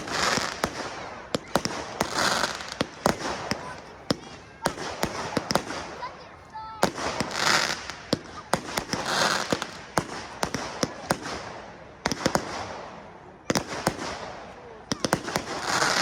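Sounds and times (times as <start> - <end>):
rushing hiss of fireworks: 0.0 - 16.0.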